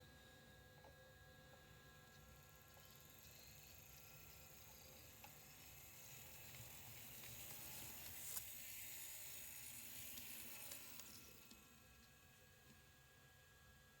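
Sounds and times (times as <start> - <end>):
model train whirring: 2.0 - 12.5.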